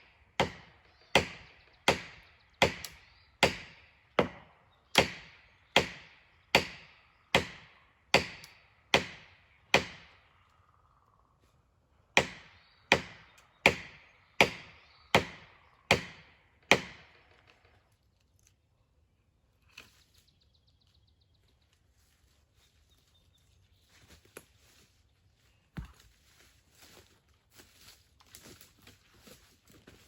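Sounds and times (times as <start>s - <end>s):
axe chopping into wood: 0.4s - 10.1s, 12.2s - 17.1s.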